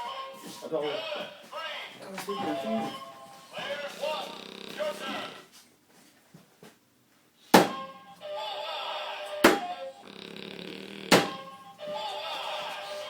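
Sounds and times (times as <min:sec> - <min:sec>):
music playing: 0:00.0 - 0:05.2, 0:07.6 - 0:10.1, 0:11.1 - 0:13.0
sharp knocks: 0:07.6 - 0:07.9, 0:11.1 - 0:11.4.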